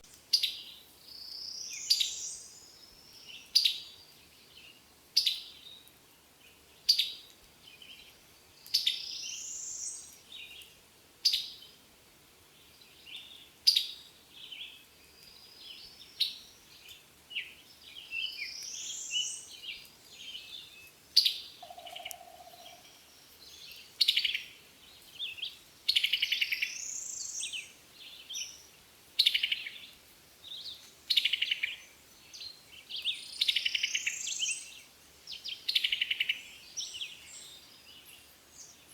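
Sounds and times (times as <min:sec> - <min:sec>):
songbirds chirping and trilling: 0:12.5 - 0:38.9.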